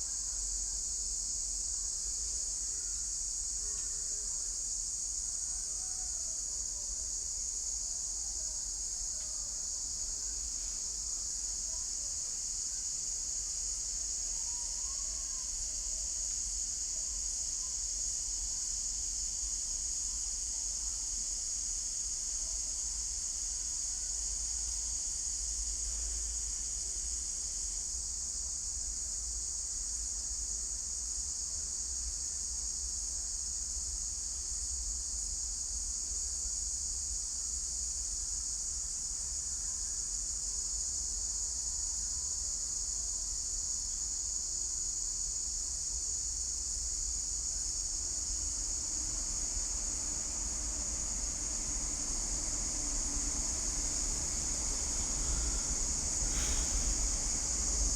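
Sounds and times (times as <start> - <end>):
insects trilling: 0.0 - 27.7, 38.4 - 57.9
faint low rumble: 47.7 - 57.9.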